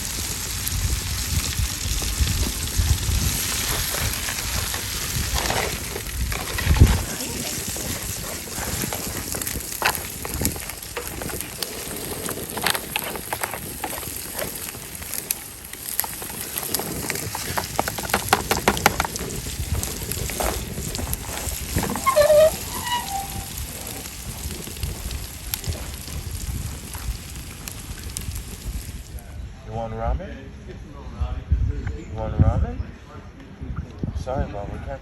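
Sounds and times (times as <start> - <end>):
fire crackling and popping: 0.0 - 29.3.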